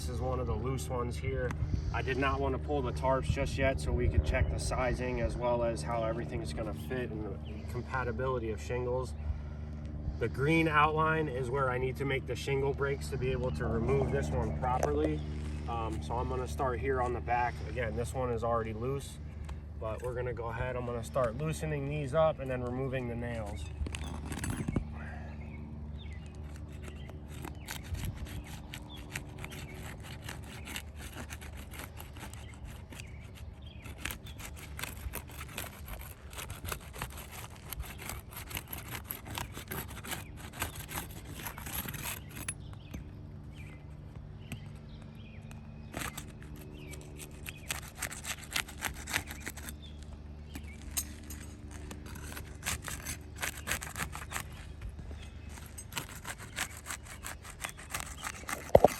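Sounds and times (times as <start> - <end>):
steady low hum: 0.0 - 58.9
pry tool scraping shingles: 11.7 - 25.0, 26.0 - 58.9.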